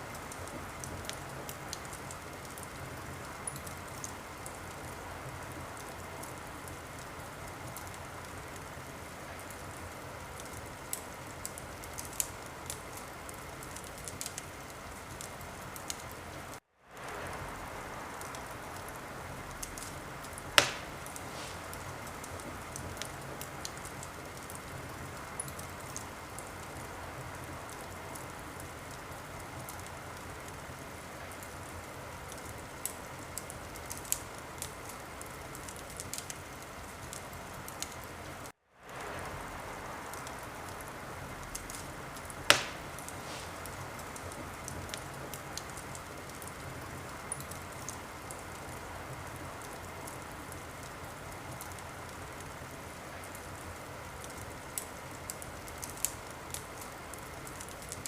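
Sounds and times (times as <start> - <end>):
wood fire crackling: 0.0 - 58.0
fire hissing: 7.6 - 28.7, 38.8 - 48.8
sharp loud pops of fire: 19.7 - 22.4, 42.5 - 44.3.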